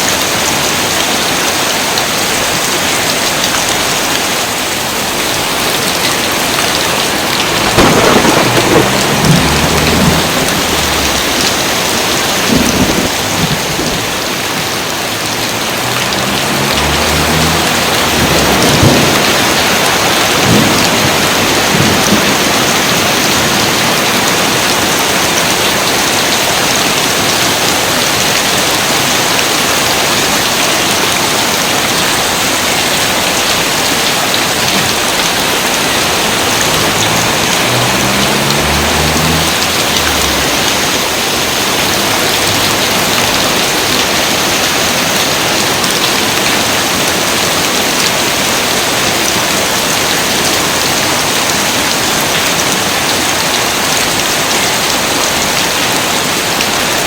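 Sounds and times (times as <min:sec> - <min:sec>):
steady rain pouring: 0:00.0 - 0:57.0
thunder rumbling: 0:05.0 - 0:24.0, 0:35.2 - 0:45.0.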